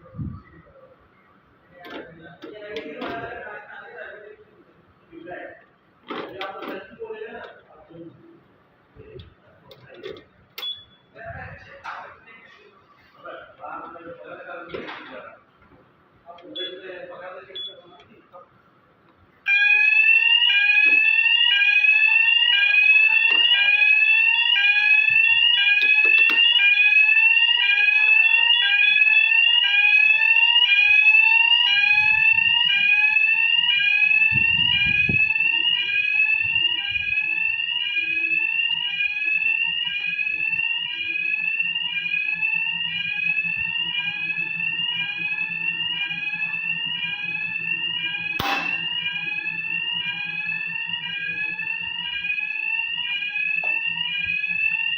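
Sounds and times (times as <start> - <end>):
fire alarm whooping: 16.5 - 18.0, 19.4 - 54.9.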